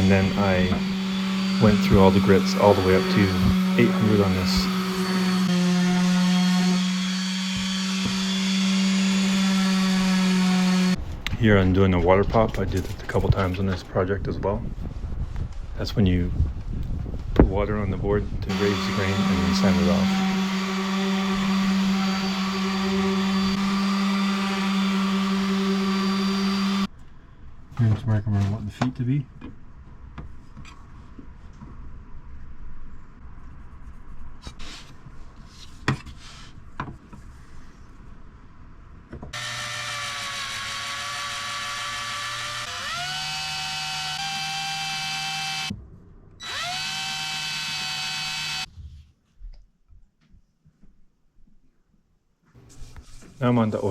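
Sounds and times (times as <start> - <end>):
electric power sander running: 0.0 - 11.0, 18.5 - 26.9, 39.4 - 45.7, 46.4 - 48.7.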